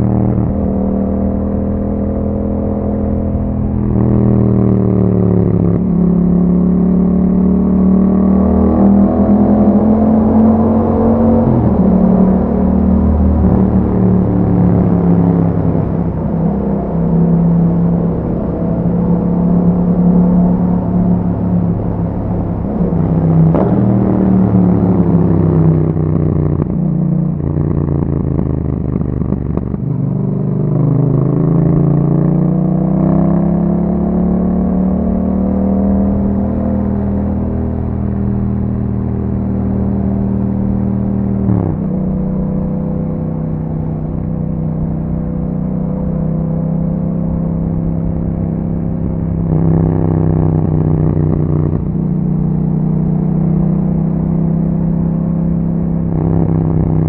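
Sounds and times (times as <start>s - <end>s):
motorcycle engine accelerating: 0.0s - 57.0s.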